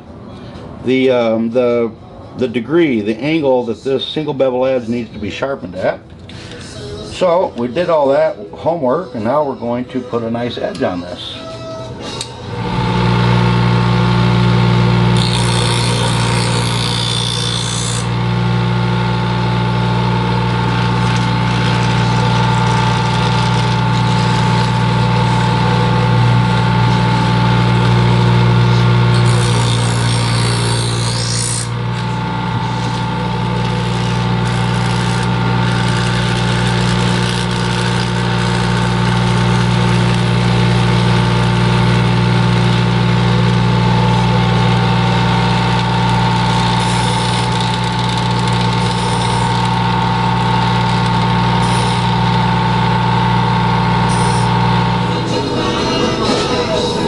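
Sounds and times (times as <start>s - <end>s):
sharpening machine humming: 11.9s - 57.0s
blade grinding on abrasive: 12.6s - 57.0s.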